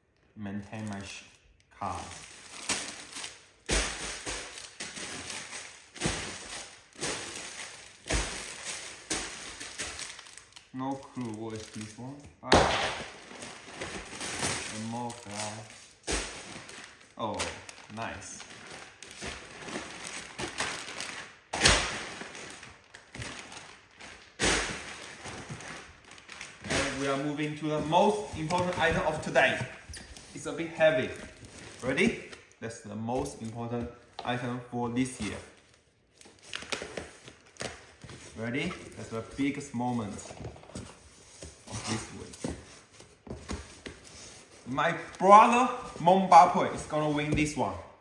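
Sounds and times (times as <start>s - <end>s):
packaging crinkling: 1.8s - 12.2s, 12.9s - 32.6s, 35.2s - 47.8s.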